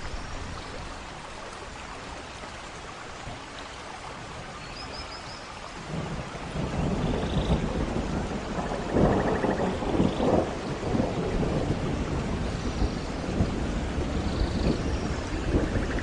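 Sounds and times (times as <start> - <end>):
heavy rain: 0.0 - 16.0
thunder rumbling: 5.8 - 16.0.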